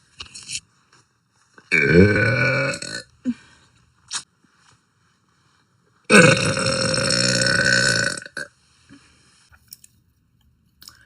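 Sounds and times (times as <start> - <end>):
woman burping: 1.7 - 3.1, 6.1 - 8.5.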